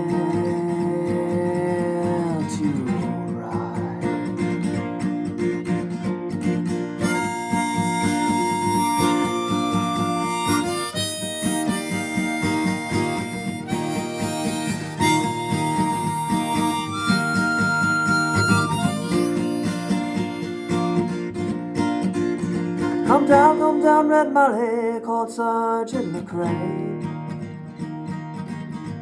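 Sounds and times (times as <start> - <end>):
acoustic guitar: 0.0 - 29.0
harmonica long held notes: 7.0 - 21.6.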